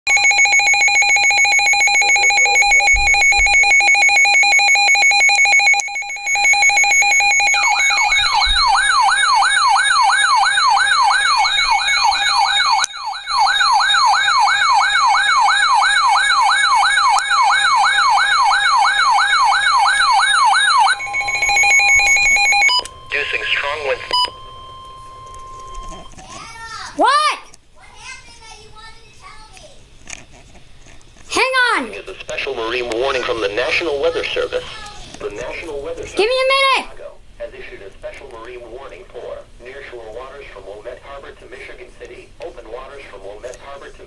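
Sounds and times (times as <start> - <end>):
steady electronic alert tone: 0.1 - 26.2
warbling siren-like tone: 5.0 - 26.2.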